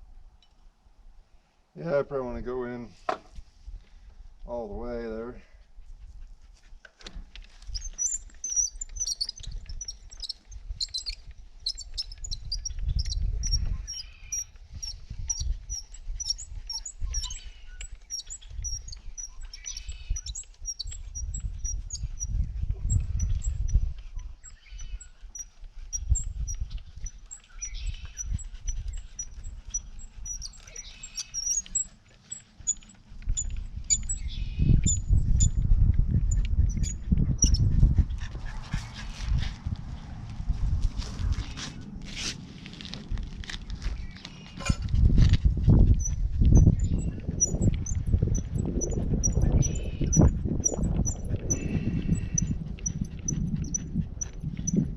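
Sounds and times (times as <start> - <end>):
low rumbling and scraping: 7.2 - 54.9
small bird chirping: 7.7 - 38.2, 45.7 - 54.9.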